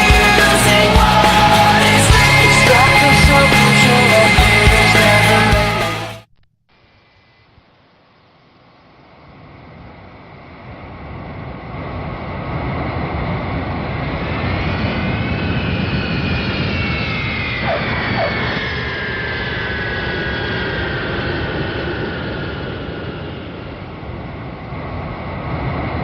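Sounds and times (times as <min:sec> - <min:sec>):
jet aircraft flying past: 0:10.4 - 0:26.0.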